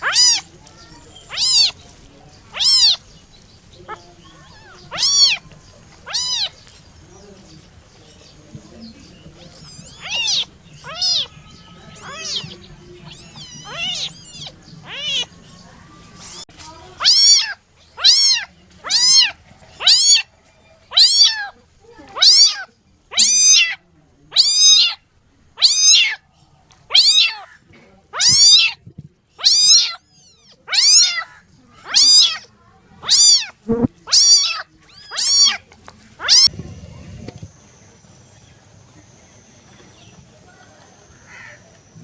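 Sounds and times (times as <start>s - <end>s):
kitten meowing: 0.0s - 0.5s, 1.2s - 1.8s, 2.5s - 3.0s, 4.4s - 5.4s, 6.0s - 6.6s, 9.4s - 15.4s, 17.0s - 20.2s, 20.9s - 21.5s, 22.1s - 25.0s, 25.6s - 26.2s, 26.9s - 27.4s, 28.2s - 28.8s, 29.4s - 31.2s, 31.9s - 35.6s, 36.2s - 36.5s.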